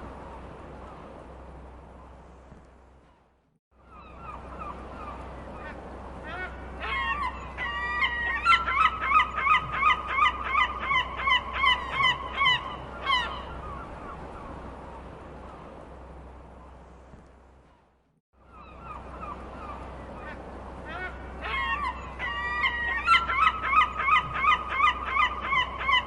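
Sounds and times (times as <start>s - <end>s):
seagulls calling: 3.8s - 14.6s, 18.4s - 26.0s.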